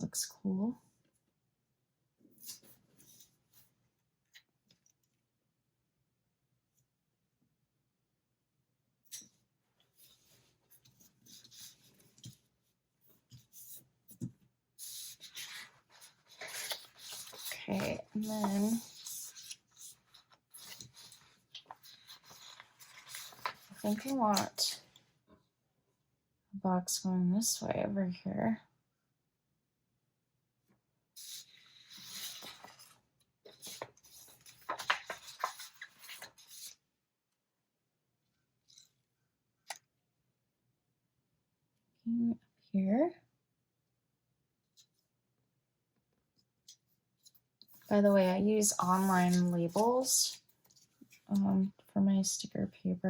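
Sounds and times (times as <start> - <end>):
paper rustling: 9.9 - 12.6, 13.2 - 24.8, 31.2 - 36.8, 46.7 - 51.3
scratchy paper rub: 14.8 - 24.5, 31.2 - 36.8, 47.7 - 50.1.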